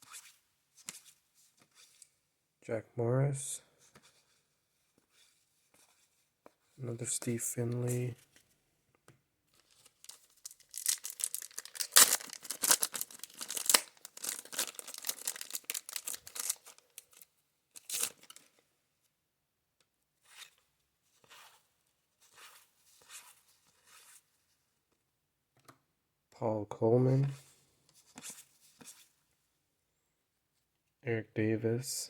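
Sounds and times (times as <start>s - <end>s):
wax paper wrapper tearing and crinkling: 9.6s - 17.2s, 17.8s - 18.4s.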